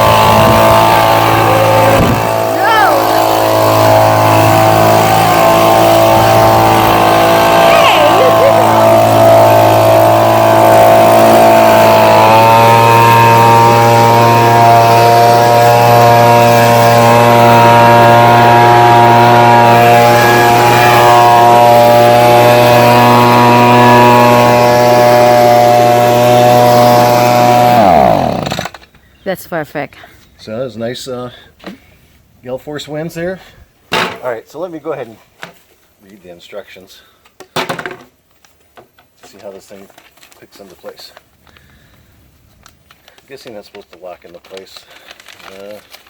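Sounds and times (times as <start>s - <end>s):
leaf blower engine running: 0.0s - 28.8s, 43.0s - 46.0s.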